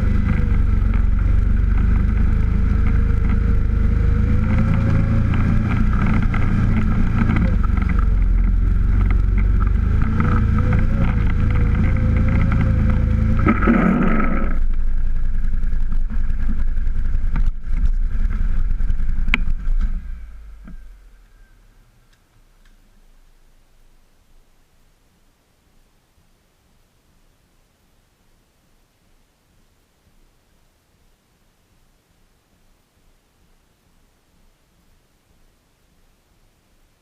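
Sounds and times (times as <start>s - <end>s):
vehicle engine driving: 0.0s - 23.4s
wavering whine: 0.0s - 24.1s.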